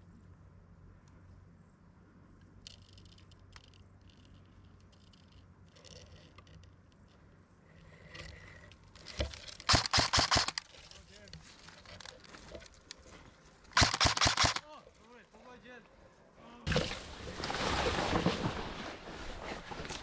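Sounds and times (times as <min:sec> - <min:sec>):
faint rustling and scraping: 0:02.3 - 0:09.7, 0:10.6 - 0:13.7, 0:14.8 - 0:20.0
airsoft rifle firing: 0:09.6 - 0:10.6, 0:13.7 - 0:14.7.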